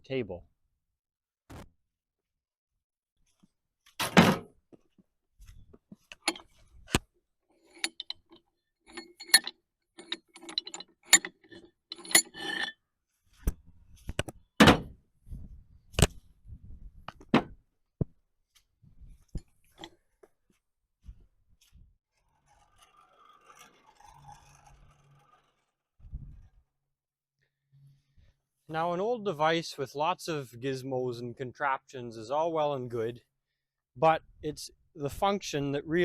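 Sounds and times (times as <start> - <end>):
metal rattling and scraping: 6.0 - 12.8, 22.1 - 26.7
metal tools clanking: 6.1 - 6.6, 7.6 - 12.8.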